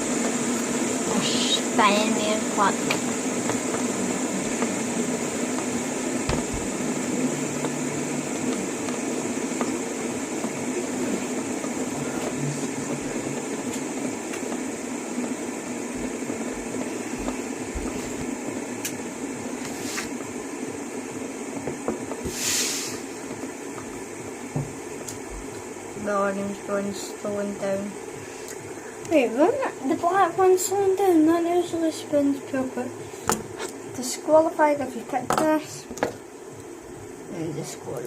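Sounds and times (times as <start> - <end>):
fidget spinners whirring: 0.0 - 20.4
short hiss: 22.2 - 23.1.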